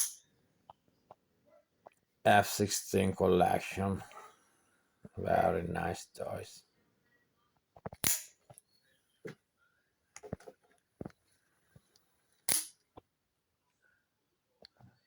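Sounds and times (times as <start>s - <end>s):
knife handling clicks: 8.0s - 8.4s.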